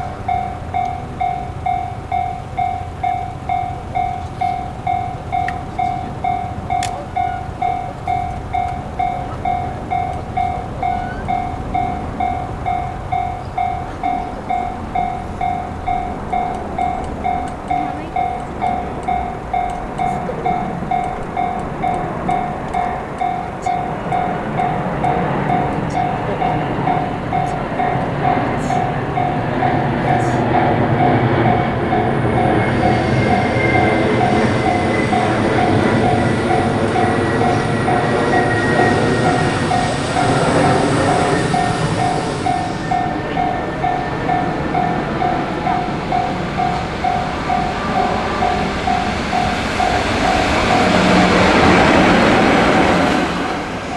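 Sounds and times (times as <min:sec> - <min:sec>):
freight train rumble: 0:00.0 - 0:53.9
high whine: 0:00.0 - 0:53.9
level-crossing bell ringing: 0:00.0 - 0:53.9
wheel squeal: 0:04.0 - 0:17.0, 0:29.8 - 0:45.5.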